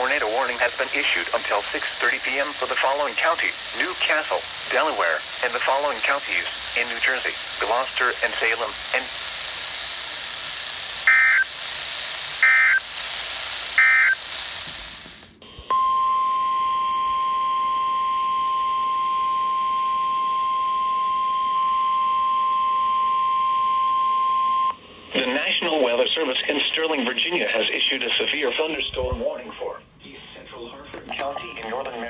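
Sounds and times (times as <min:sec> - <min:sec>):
static hiss: 0:00.0 - 0:15.6
digital data bursts: 0:11.0 - 0:11.5, 0:12.4 - 0:12.9.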